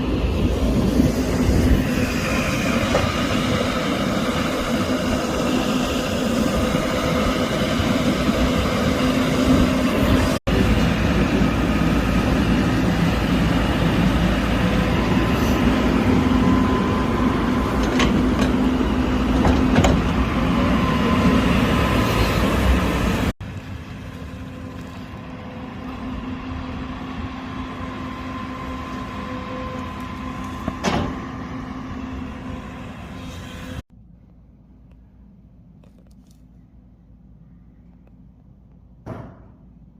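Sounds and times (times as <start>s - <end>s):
diesel engine running: 0.0s - 33.9s
sharp knock: 39.0s - 39.6s.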